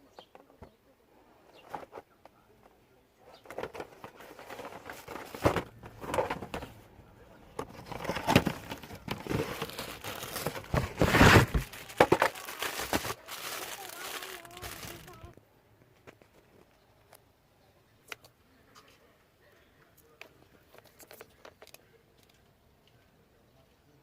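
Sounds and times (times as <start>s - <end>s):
crinkling and rustling packaging: 3.4s - 6.8s, 7.4s - 15.4s, 20.6s - 22.4s.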